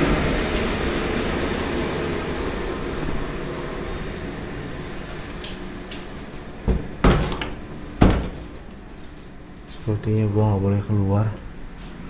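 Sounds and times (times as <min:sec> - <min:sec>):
rushing rumbling noise: 0:00.0 - 0:08.7.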